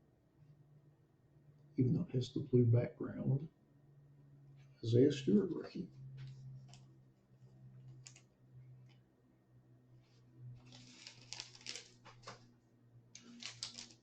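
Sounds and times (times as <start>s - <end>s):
steady low hum: 0.0s - 14.0s
cards rustling and clicking: 7.9s - 8.2s, 10.6s - 12.5s, 13.2s - 14.0s.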